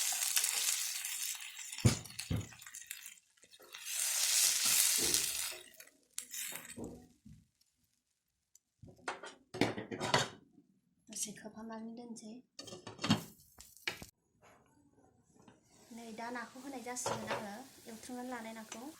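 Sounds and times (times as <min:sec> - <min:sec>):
utensils and pans clinking: 0:00.0 - 0:07.1
curry sizzling in a hot pan: 0:00.0 - 0:08.0, 0:15.7 - 0:18.9.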